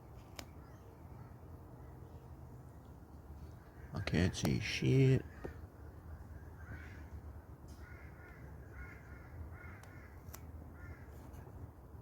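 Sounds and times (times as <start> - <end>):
distant crow cawing: 3.5 - 11.4.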